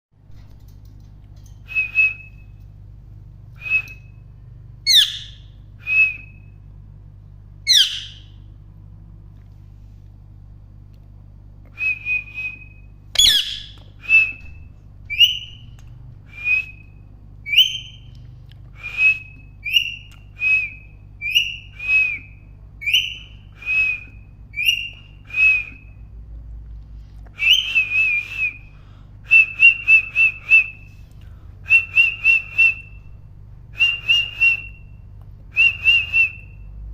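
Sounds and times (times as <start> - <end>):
parrot whistling calls: 4.8 - 6.5, 7.6 - 8.4, 11.8 - 15.7, 16.3 - 18.1, 18.8 - 25.9, 27.4 - 28.6, 35.6 - 36.6.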